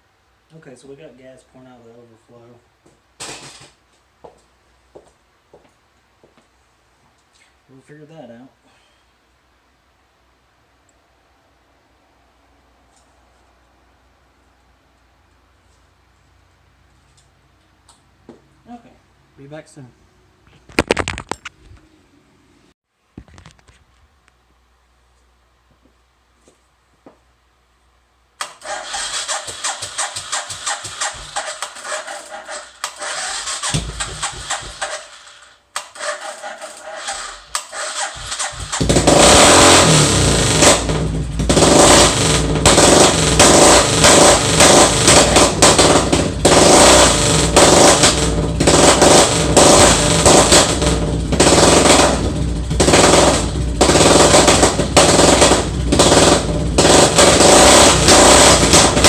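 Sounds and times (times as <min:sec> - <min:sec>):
motorcycle engine starting: 0:28.4 - 0:59.0
engine running with throttle blips: 0:28.6 - 0:59.0.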